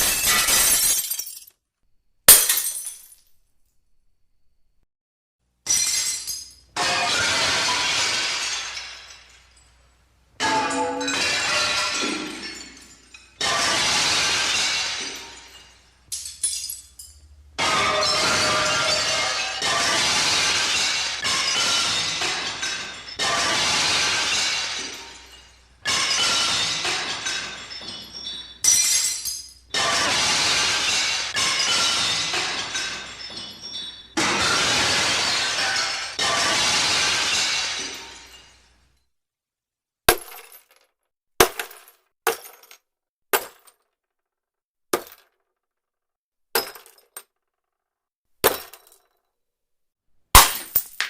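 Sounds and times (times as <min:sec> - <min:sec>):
glass breaking: 0:00.0 - 0:01.6, 0:02.3 - 0:03.4, 0:05.7 - 0:38.8, 0:40.1 - 0:40.8, 0:46.6 - 0:47.3, 0:48.4 - 0:49.1, 0:50.4 - 0:51.0
glass pieces clinking: 0:00.0 - 0:01.6, 0:14.2 - 0:19.6, 0:24.3 - 0:29.8, 0:31.4 - 0:34.2
glass smashing: 0:00.0 - 0:01.6, 0:02.3 - 0:03.8, 0:05.7 - 0:38.8, 0:40.1 - 0:40.8, 0:46.6 - 0:47.3, 0:50.4 - 0:51.0
glass shards tinkling: 0:32.7 - 0:34.2.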